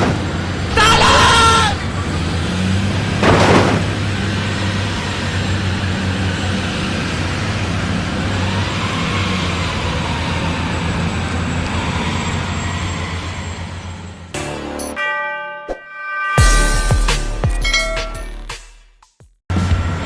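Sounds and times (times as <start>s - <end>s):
vehicle engine humming: 0.0s - 15.0s, 19.5s - 20.0s.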